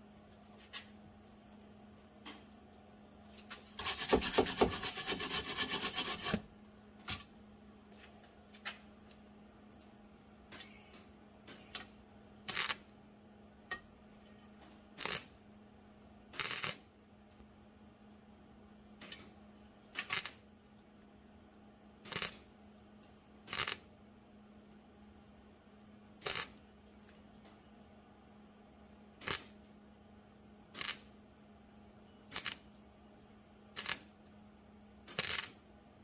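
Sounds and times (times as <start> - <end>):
faint steady hum: 0.0 - 36.0
spot welder pulsing: 3.8 - 6.5, 12.5 - 12.9, 15.0 - 15.4, 16.4 - 16.8, 20.0 - 20.4, 22.0 - 22.5, 23.5 - 23.9, 26.2 - 26.6, 29.2 - 29.6, 30.7 - 31.1, 32.3 - 32.7, 33.8 - 34.1, 35.0 - 35.6.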